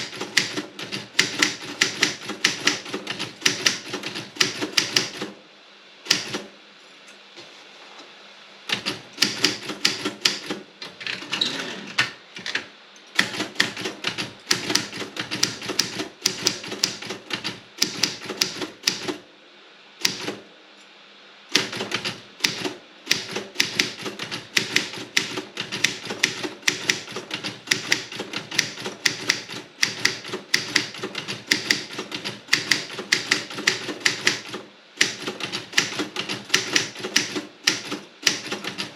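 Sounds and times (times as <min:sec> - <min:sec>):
typewriter key strikes: 0:00.0 - 0:05.3, 0:13.2 - 0:19.2, 0:21.6 - 0:38.9.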